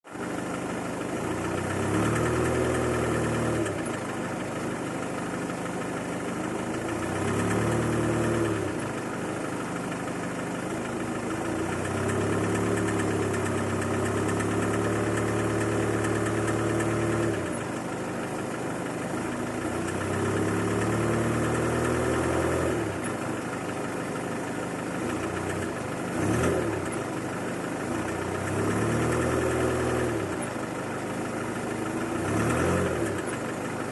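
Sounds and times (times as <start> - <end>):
diesel engine idling and revving: 0.1 - 33.9.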